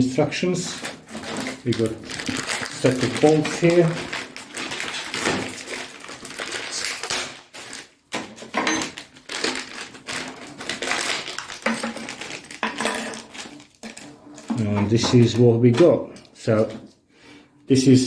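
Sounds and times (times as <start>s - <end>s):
plastic packet crinkling: 0.6s - 15.4s
small metal parts clinking: 8.4s - 14.5s.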